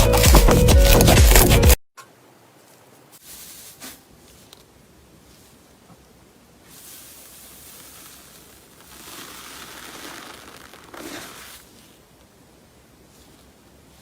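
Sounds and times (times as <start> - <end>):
slime squeezed crackling: 7.7 - 11.6.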